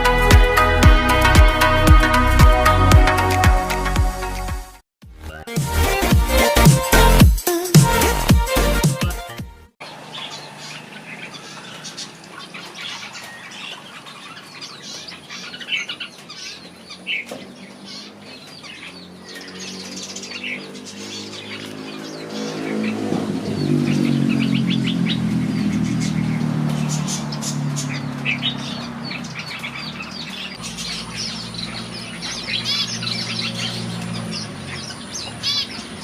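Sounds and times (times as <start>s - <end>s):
birds chirping: 9.8s - 36.0s.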